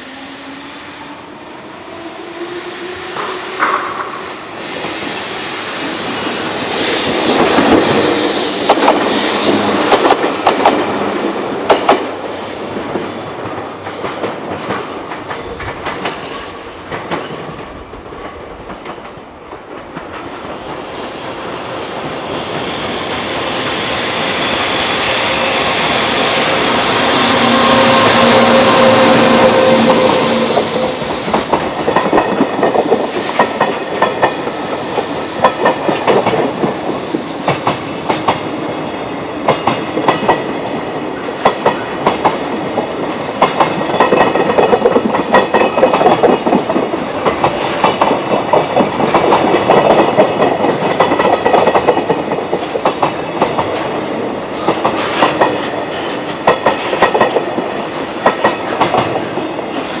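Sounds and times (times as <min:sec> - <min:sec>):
freight train running noise: 0:00.0 - 1:00.0
wheels clacking over rail joints: 0:39.4 - 1:00.0.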